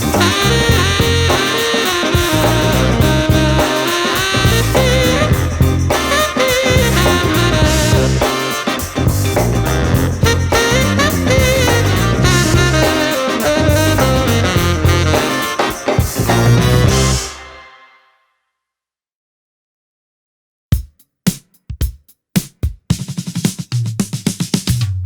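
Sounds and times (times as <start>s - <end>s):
funk pop music with horns: 0.0s - 17.9s.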